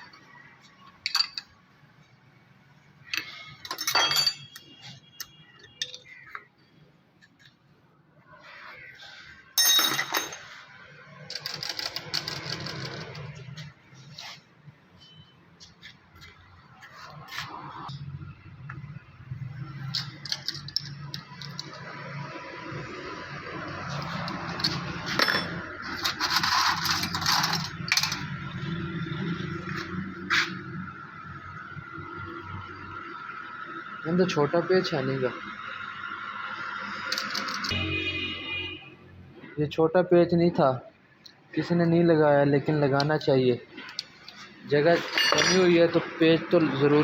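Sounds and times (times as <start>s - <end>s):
metal pieces rattling and clinking: 1.0s - 1.5s, 3.1s - 4.6s, 9.6s - 10.6s, 19.8s - 21.8s, 24.6s - 28.3s, 45.0s - 45.7s.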